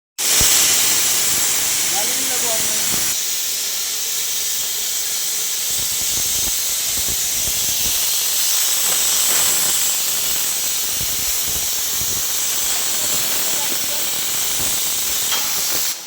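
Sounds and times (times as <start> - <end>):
plasma torch cutting metal: 0.2 - 16.0
faint crackle: 5.6 - 16.0.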